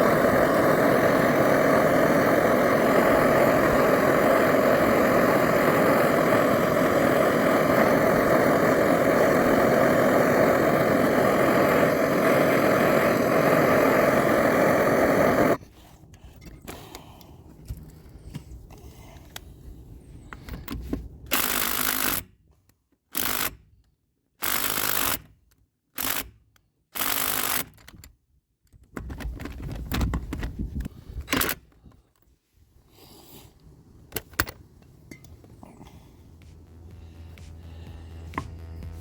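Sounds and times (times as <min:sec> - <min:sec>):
aerosol spray hissing: 0:00.0 - 0:15.6.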